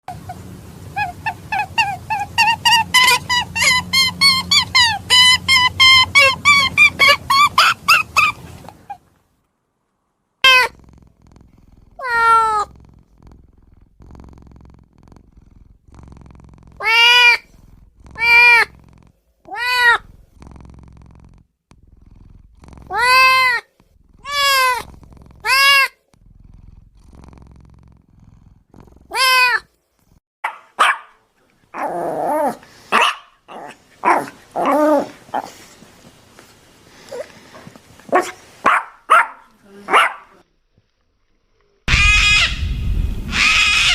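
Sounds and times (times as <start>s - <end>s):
cat meowing: 1.0s - 8.3s, 10.4s - 10.8s, 12.0s - 12.7s, 16.8s - 17.5s, 18.2s - 18.7s, 19.5s - 20.1s, 22.9s - 23.6s, 24.2s - 26.0s, 29.1s - 29.7s, 43.3s - 43.9s.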